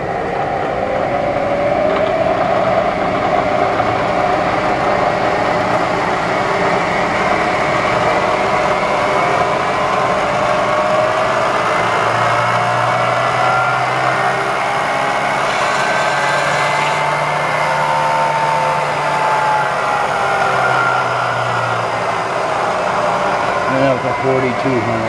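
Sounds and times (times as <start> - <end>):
milling machine motor humming: 0.0 - 25.0.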